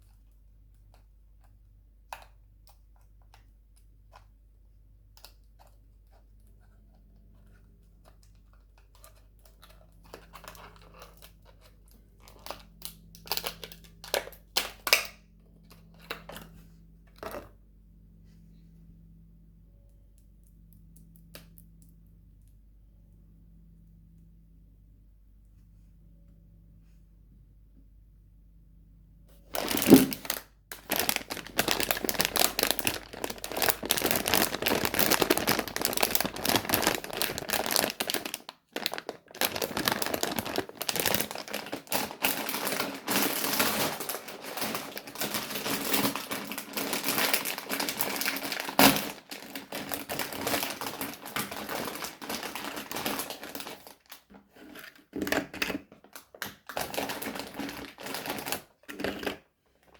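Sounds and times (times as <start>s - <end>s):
plastic wrappers crinkling: 7.1s - 16.6s, 29.5s - 54.7s, 56.0s - 59.3s.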